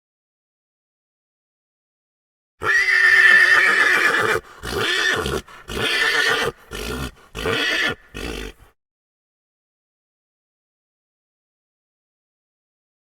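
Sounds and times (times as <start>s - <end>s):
horse whinnying: 2.6s - 8.7s.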